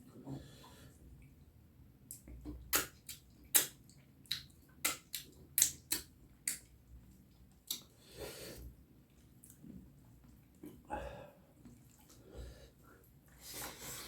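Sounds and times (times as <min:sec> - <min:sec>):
wet mouth smacks while chewing: 0:02.1 - 0:06.7, 0:07.6 - 0:07.9.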